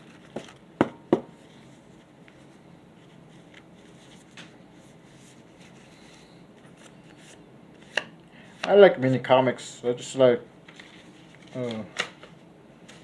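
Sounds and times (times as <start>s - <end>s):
paper rustling: 10.7s - 12.2s.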